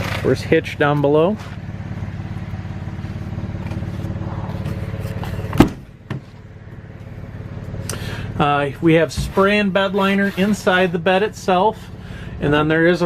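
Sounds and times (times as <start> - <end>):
vehicle engine idling: 0.0 - 13.0
loud clunk: 5.3 - 6.4.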